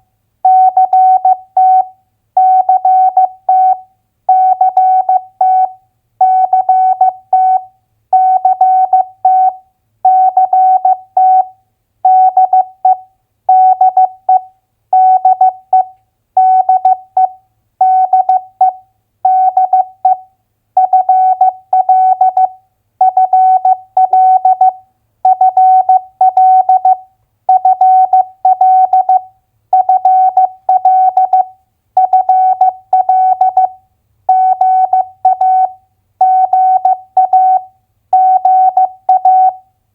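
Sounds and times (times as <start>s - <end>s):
morse code beeps: 20.8s - 29.2s, 29.8s - 39.6s.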